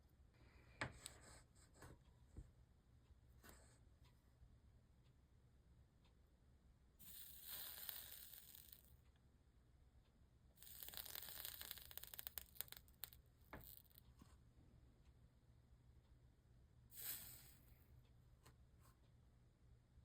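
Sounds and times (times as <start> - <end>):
solder flux sizzling and crackling: 7.0 - 9.0, 10.6 - 14.4, 16.9 - 17.8.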